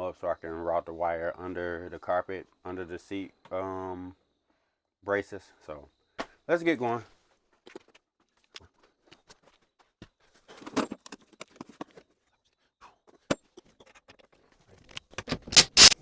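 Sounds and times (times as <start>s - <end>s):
tools clicking and knocking: 14.8s - 16.0s.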